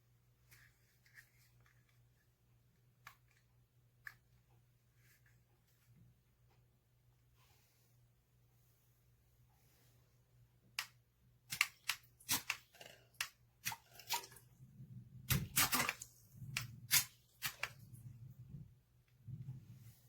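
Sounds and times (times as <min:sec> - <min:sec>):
low steady hum: 0:13.0 - 0:20.0.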